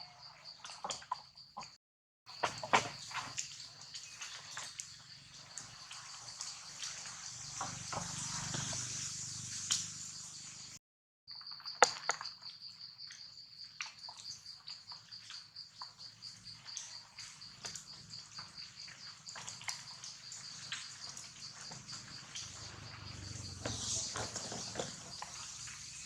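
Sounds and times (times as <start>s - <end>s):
insect chirping: 0.0s - 1.7s, 2.3s - 26.0s
hiss of noise: 6.6s - 10.8s, 22.5s - 26.0s.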